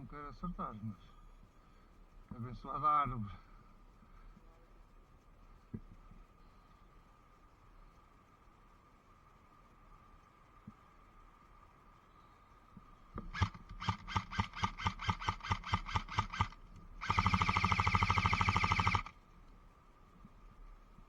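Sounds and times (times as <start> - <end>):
airsoft gun shots: 13.3 - 19.1
airsoft gun full-auto burst: 13.3 - 19.2.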